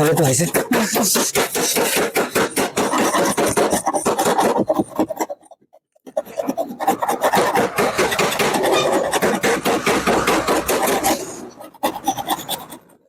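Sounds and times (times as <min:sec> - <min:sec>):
sandpaper scraping car panel: 0:00.0 - 0:05.2, 0:06.5 - 0:12.8.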